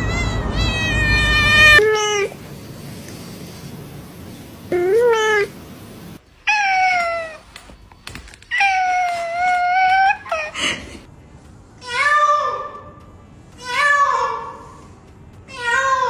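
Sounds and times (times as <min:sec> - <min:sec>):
cat meowing: 0:00.0 - 0:02.4, 0:04.7 - 0:05.5, 0:06.4 - 0:07.5.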